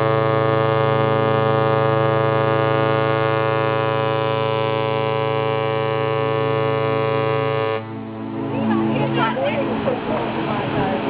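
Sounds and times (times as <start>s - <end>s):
ship's horn long blast: 0.0s - 10.8s.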